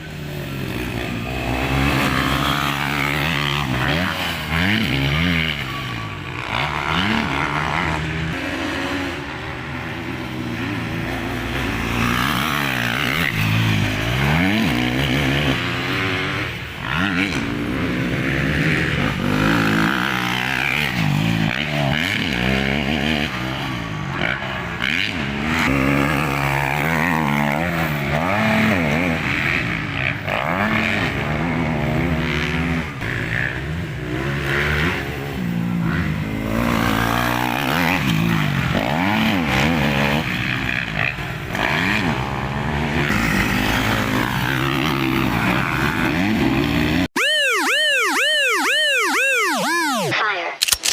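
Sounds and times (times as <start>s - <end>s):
motocross engines revving: 0.0s - 50.2s.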